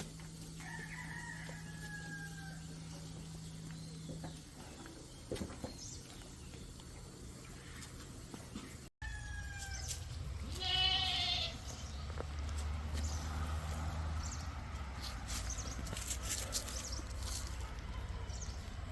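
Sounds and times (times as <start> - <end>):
goat bleating: 10.4 - 11.7.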